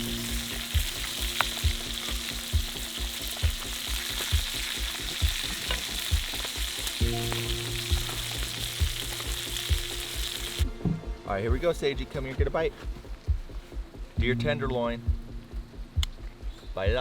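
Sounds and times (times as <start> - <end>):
meat sizzling: 0.0 - 10.7
background music with low beat: 0.0 - 17.0.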